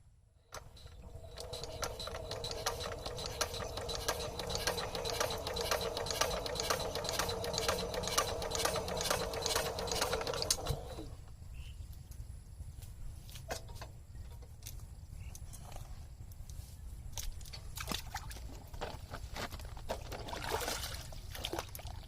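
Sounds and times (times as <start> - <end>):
sewing machine running: 0.5 - 11.1.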